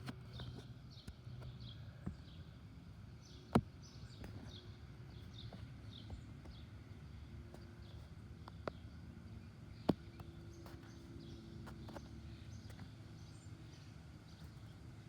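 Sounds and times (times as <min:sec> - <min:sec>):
faint bird chirping: 0:00.2 - 0:15.0.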